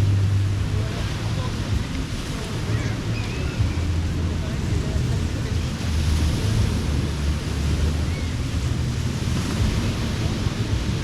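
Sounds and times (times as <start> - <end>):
ocean surf on a beach: 0.0 - 11.0
wind buffeting microphone: 0.0 - 11.0.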